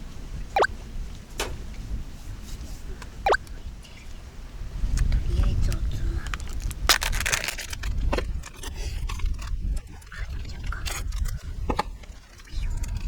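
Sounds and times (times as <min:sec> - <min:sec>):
gear scraping and clicking: 0:06.3 - 0:11.4.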